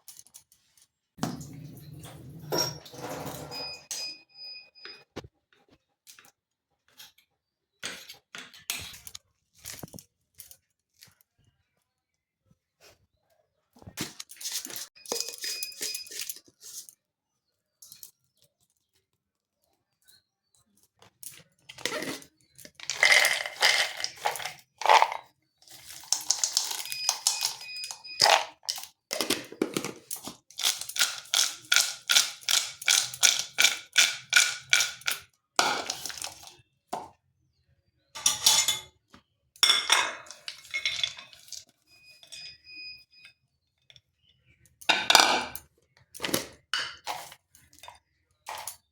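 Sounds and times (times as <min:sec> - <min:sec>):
spoon knocking and scraping bowl: 0:01.2 - 0:04.1, 0:14.5 - 0:16.8, 0:21.8 - 0:37.1, 0:39.6 - 0:41.6, 0:46.2 - 0:47.4.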